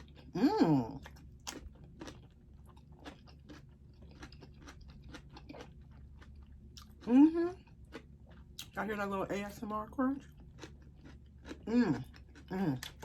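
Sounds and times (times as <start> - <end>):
appreciative hum: 0.0 - 2.2, 4.6 - 8.8, 11.3 - 13.0
person chewing crunchy food: 0.0 - 8.8, 10.2 - 13.0.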